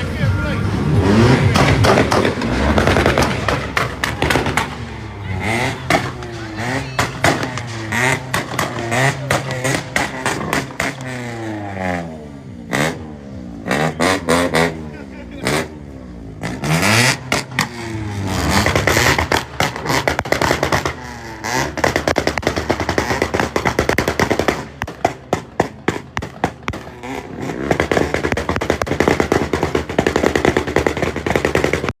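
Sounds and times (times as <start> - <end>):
car engine revving: 0.0 - 32.0
exhaust pops and bangs: 1.3 - 12.0, 15.4 - 32.0.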